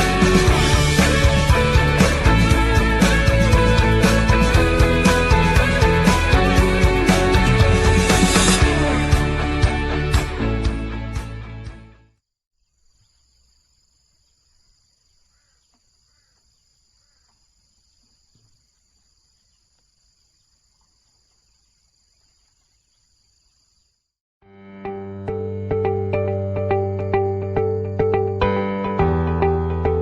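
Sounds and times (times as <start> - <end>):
background music: 0.0 - 12.1, 24.5 - 30.0
faint bird chirps: 12.6 - 24.0.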